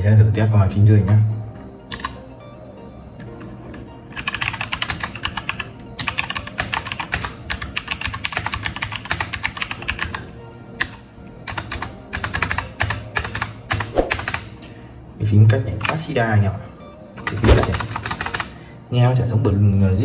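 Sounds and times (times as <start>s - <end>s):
mechanical keyboard typing: 1.9s - 2.2s, 4.2s - 14.5s, 17.2s - 18.6s.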